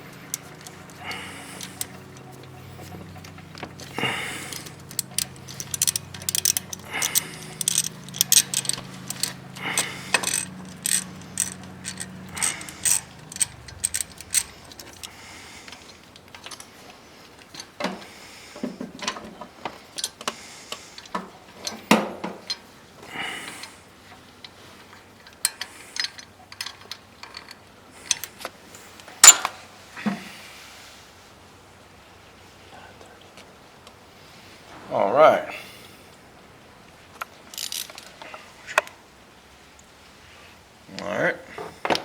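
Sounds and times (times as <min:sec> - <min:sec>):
metallic tool clicks and clinks: 0:00.1 - 0:16.7, 0:37.6 - 0:38.1.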